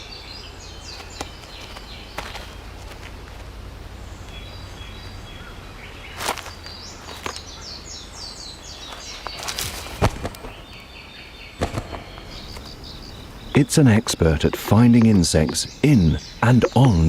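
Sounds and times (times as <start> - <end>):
forest ambience: 0.0 - 17.0
sharp knocks: 11.6 - 12.8.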